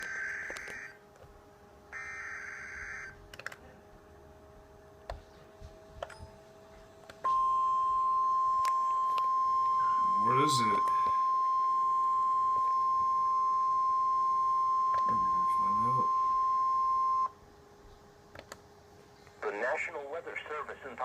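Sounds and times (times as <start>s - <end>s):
steady attention tone: 4.2s - 17.8s
screechy digital data tones: 9.5s - 11.2s.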